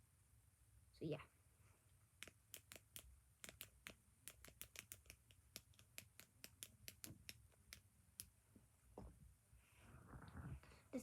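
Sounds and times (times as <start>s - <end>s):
plastic fidget toy clicking: 2.2s - 8.3s.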